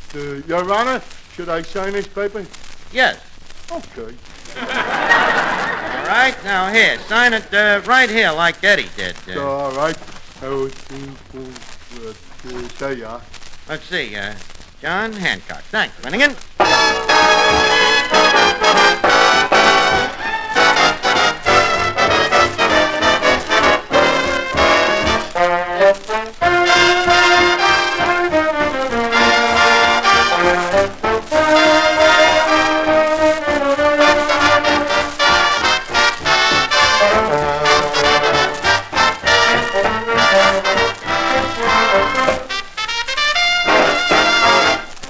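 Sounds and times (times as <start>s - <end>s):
big band brass music: 4.5s - 8.2s, 16.6s - 45.0s.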